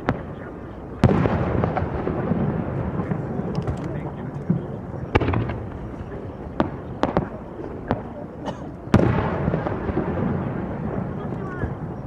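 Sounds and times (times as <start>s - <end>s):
low rumble of echoing booms: 0.0s - 8.2s, 8.9s - 12.0s
firework shells bursting: 1.0s - 8.1s.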